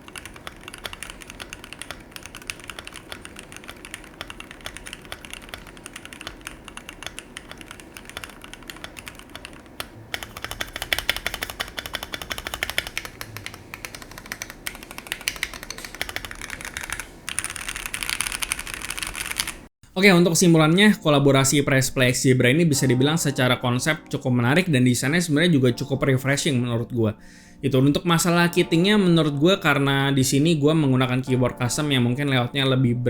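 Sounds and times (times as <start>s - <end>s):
mechanical keyboard key clacks: 0.0s - 19.6s.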